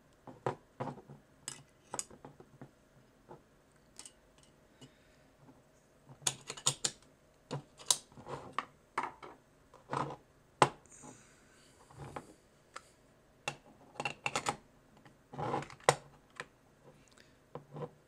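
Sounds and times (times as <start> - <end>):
pistol parts clicking and clacking: 6.2 - 7.0.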